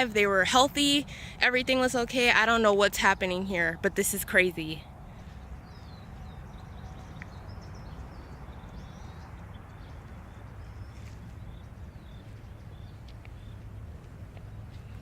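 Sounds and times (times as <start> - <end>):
low outdoor rumble: 0.0 - 15.0
small birds chirping: 4.9 - 15.0.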